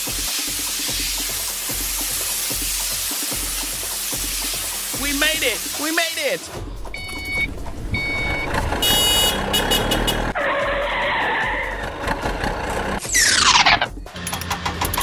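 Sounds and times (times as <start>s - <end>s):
car-like rush of noise: 6.6s - 10.4s
loud falling whoosh: 6.8s - 9.5s
short cartoon beep: 7.0s - 9.4s.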